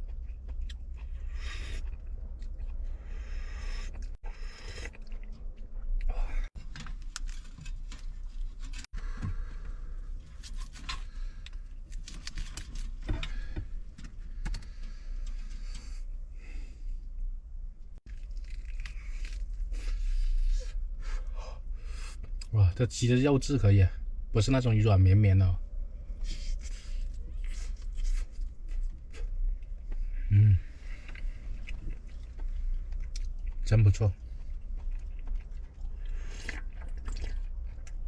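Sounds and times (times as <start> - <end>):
chewing crunchy food: 0.0 - 6.1, 18.0 - 20.7, 26.2 - 38.0
steady low rumble: 0.0 - 38.0.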